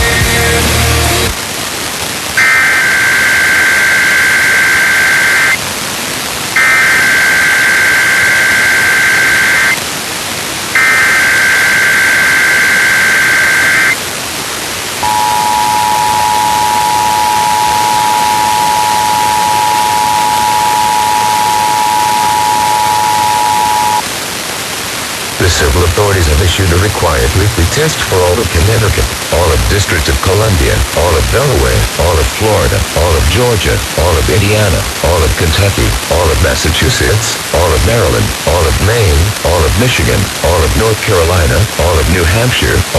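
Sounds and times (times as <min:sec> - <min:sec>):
radio static hiss: 0:00.0 - 0:42.9
warbling data tones: 0:02.4 - 0:05.6, 0:06.6 - 0:09.8, 0:10.8 - 0:14.0, 0:15.0 - 0:24.0
two-tone attention signal: 0:15.0 - 0:24.0.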